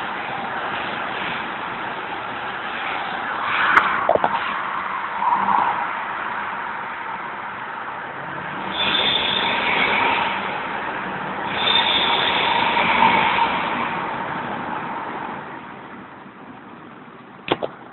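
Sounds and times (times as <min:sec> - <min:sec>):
high-pitched exhaust whistle: 0:08.7 - 0:10.5, 0:11.5 - 0:13.8.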